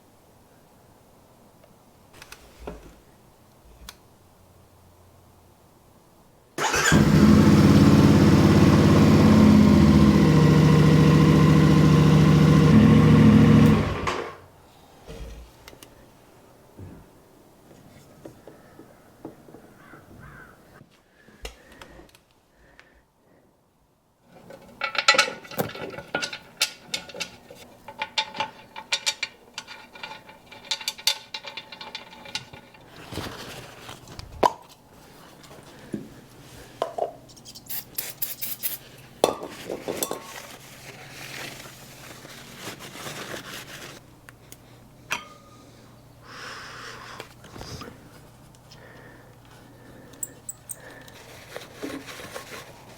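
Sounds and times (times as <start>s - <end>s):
metal tools clinking: 24.6s - 33.1s, 37.3s - 38.9s, 50.1s - 51.2s.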